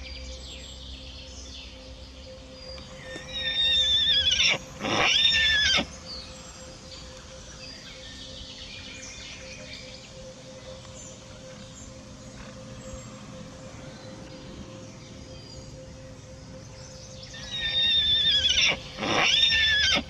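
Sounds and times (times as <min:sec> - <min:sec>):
pony whinnying: 0:03.0 - 0:05.9, 0:17.4 - 0:20.0.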